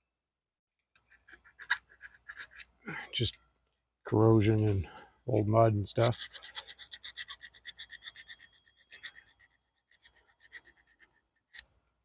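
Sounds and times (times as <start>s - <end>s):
rapid scraping on metal: 6.0s - 11.2s.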